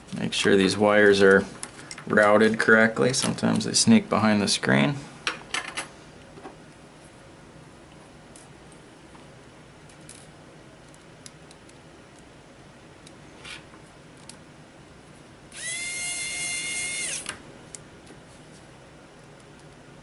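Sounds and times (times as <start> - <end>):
electric screwdriver motor whirring: 15.5 - 17.3.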